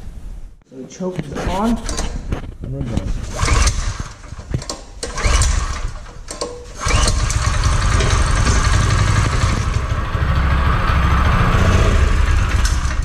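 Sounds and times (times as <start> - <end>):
small engine cranking and running: 3.2 - 11.0, 11.6 - 13.0.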